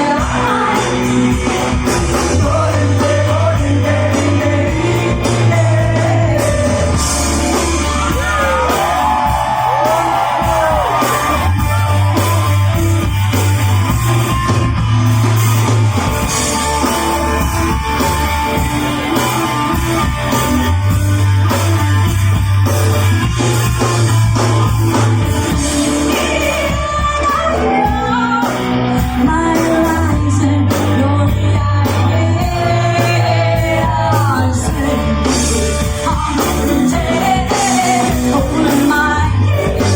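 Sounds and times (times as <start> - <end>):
lead singer singing: 0.0 - 12.0, 25.4 - 39.9
live rock band playing: 0.0 - 39.9.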